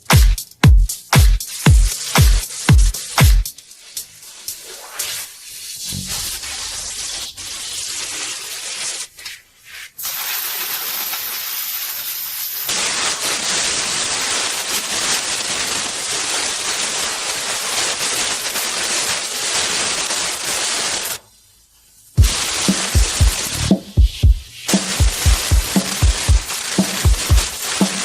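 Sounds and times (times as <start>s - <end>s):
compressed air hissing: 22.2s - 28.0s.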